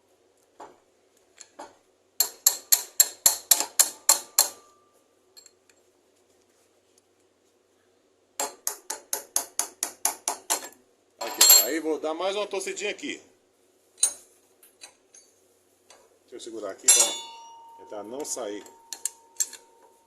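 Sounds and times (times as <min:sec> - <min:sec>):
metal-on-metal tapping: 0:01.5 - 0:04.8, 0:16.9 - 0:20.0.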